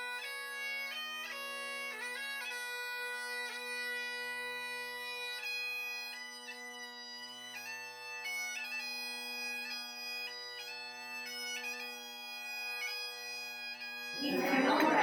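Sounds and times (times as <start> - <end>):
bagpipes playing slow melody: 0.0 - 15.0.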